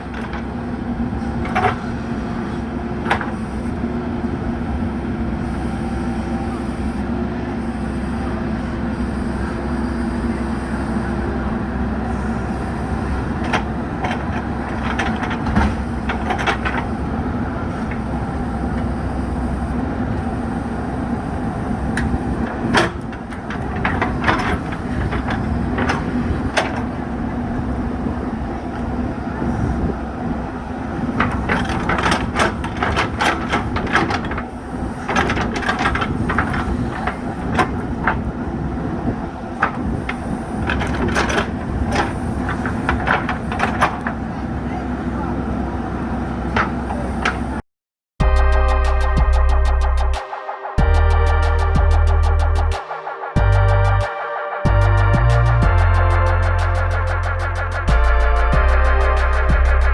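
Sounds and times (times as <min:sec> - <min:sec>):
backhoe diesel engine running: 0:00.0 - 0:47.6, 0:48.2 - 0:59.9
machine clanking and knocking: 0:12.8 - 0:29.8, 0:30.8 - 0:38.5, 0:39.5 - 0:44.2.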